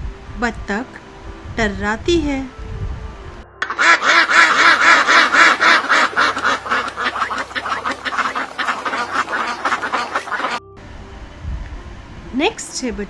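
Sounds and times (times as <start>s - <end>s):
duck quacking: 3.6s - 10.6s.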